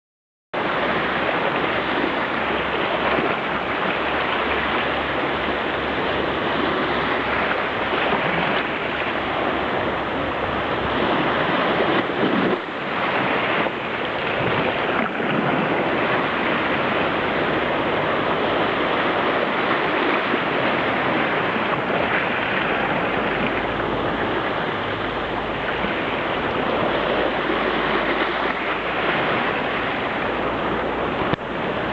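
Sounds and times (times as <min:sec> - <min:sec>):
sea waves surging: 0:00.6 - 0:31.9
wind buffeting microphone: 0:00.6 - 0:31.9.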